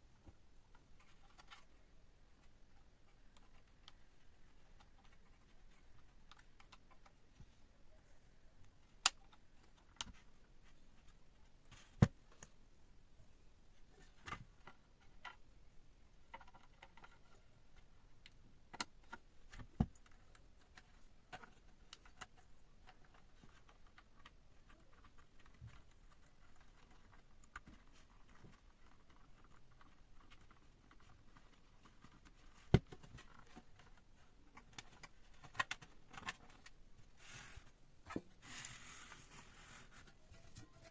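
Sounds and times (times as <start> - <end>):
sharp clicks and light knocks: 16.2 - 36.8.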